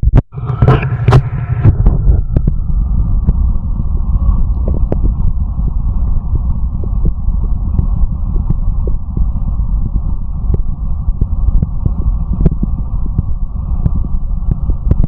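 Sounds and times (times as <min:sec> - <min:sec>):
stomach growling: 0:00.1 - 0:15.0.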